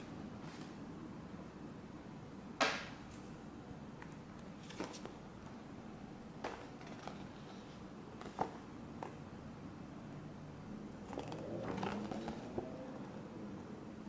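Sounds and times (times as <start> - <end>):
card and plastic rustling: 6.4 - 9.2, 11.1 - 12.5.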